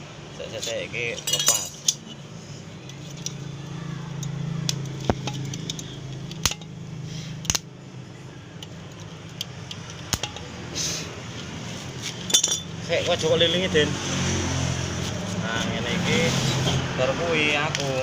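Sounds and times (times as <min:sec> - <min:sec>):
metallic clicks and taps: 0:04.2 - 0:06.8, 0:08.6 - 0:10.6.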